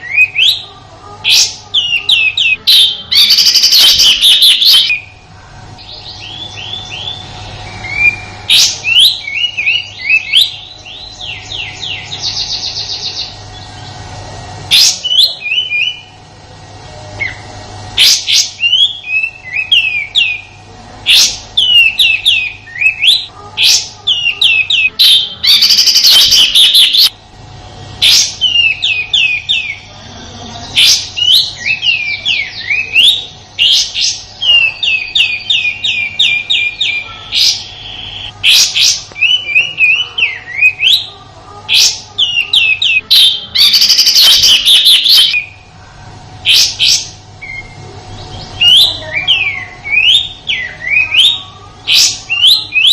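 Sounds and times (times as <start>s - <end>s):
bulbul whistled song: 6.0s - 12.7s, 18.0s - 27.1s.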